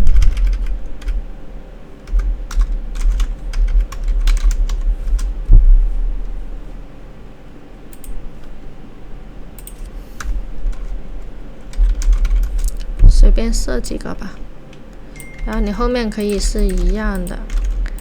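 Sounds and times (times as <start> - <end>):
keyboard typing: 0.0 - 1.3, 2.0 - 5.6, 9.6 - 11.0, 11.6 - 18.0
low hum: 0.0 - 18.0
heavy thud: 5.4 - 6.0.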